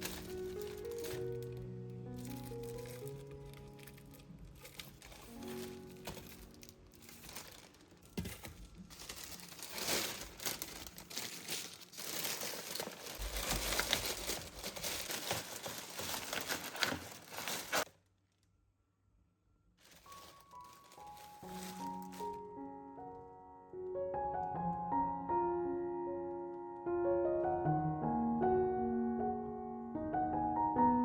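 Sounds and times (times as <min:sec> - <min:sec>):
packaging crinkling: 0:00.0 - 0:17.9, 0:19.8 - 0:22.5.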